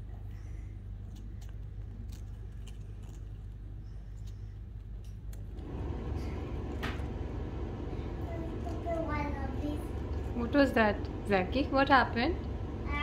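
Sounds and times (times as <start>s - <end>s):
steady low hum: 0.0s - 13.0s
parrot nibbling clicks: 1.1s - 3.6s
steady machine noise: 5.6s - 13.0s.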